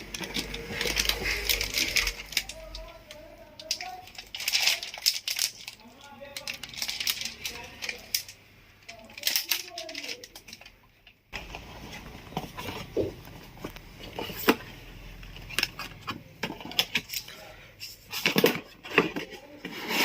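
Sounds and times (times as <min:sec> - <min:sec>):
packaging rustling: 0:00.0 - 0:10.7.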